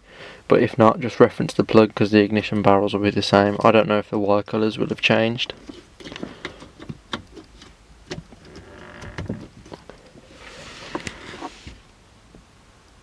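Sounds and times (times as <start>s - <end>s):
short rustle: 8.4s - 11.9s.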